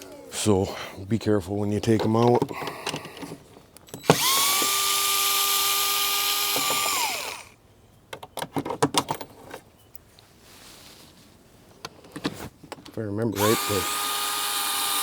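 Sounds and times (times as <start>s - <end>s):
power drill whine: 4.0s - 7.6s, 13.4s - 15.0s.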